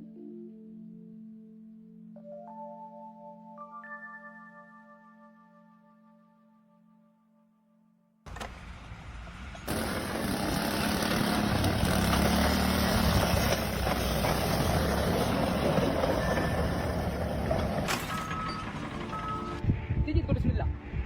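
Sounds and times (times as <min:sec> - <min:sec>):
heavy machinery rumble: 0:08.3 - 0:19.7.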